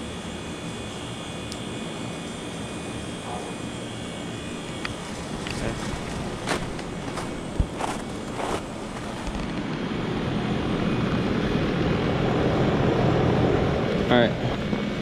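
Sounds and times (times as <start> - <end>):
heat pump hiss: 0.0 - 10.2
heat pump compressor hum: 0.0 - 15.0.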